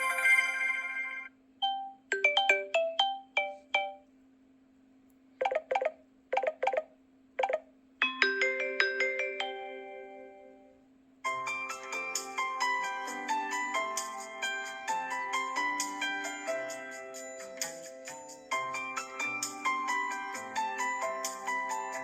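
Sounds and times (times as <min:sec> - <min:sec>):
phone ringtone melody: 0:00.0 - 0:04.0, 0:07.4 - 0:10.5
faint steady hum: 0:00.0 - 0:21.7.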